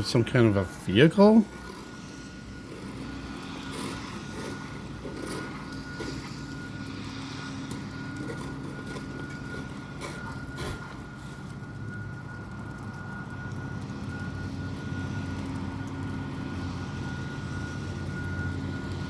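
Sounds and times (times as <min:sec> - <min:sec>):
thin high tone: 0:00.0 - 0:13.4
low humming drone: 0:00.0 - 0:19.0.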